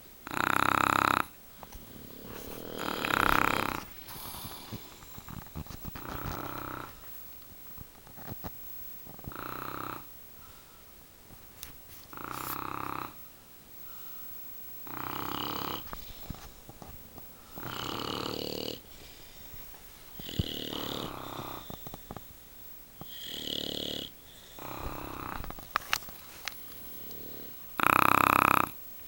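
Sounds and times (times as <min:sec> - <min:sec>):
loud rasping snoring: 0:00.2 - 0:07.1, 0:09.2 - 0:10.1, 0:12.1 - 0:13.2, 0:14.8 - 0:16.0, 0:17.5 - 0:18.9, 0:20.2 - 0:22.2, 0:23.0 - 0:25.7, 0:26.8 - 0:28.8.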